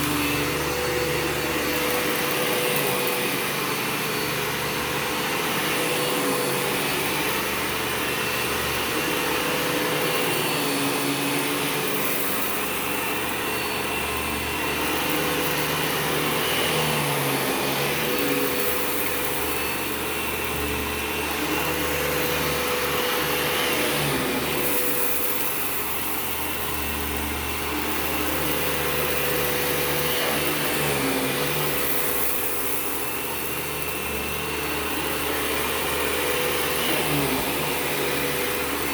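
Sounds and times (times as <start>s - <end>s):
vacuum cleaner running on carpet: 0.0s - 38.9s.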